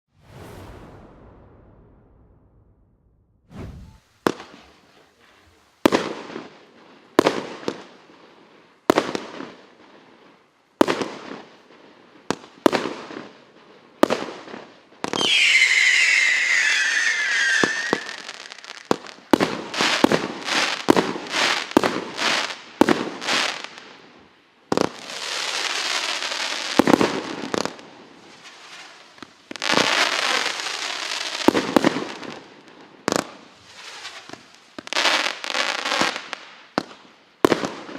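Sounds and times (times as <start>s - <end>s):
firework launch bangs and bursts: 0.1s - 5.2s
falling firework whistle: 15.1s - 18.9s.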